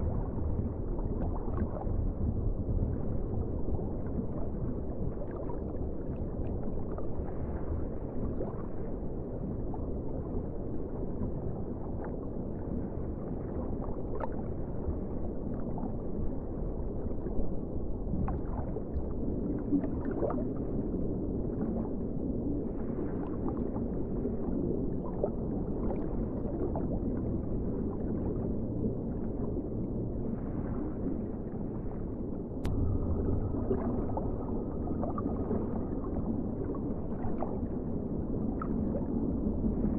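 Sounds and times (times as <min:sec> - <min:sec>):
underwater rush of water: 0:32.6 - 0:39.9.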